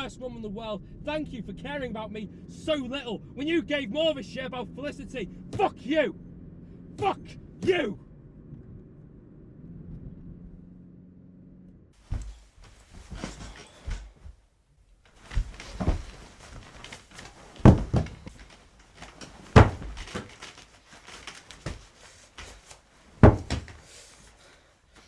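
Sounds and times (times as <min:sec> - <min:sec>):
heavy thumps and bangs: 0:12.0 - 0:14.4, 0:15.2 - 0:18.6, 0:19.2 - 0:20.4, 0:23.2 - 0:23.8
rustling: 0:12.0 - 0:25.0.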